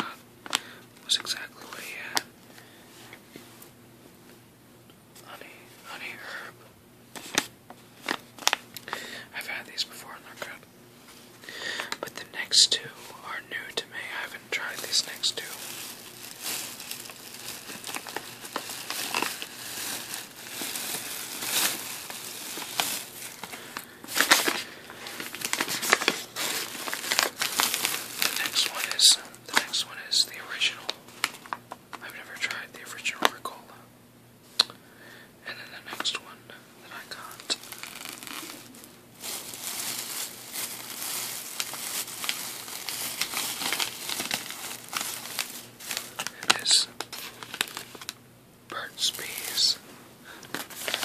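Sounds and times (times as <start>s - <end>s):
plastic bags crinkling: 11.8s - 31.7s, 37.0s - 48.2s, 48.8s - 51.0s.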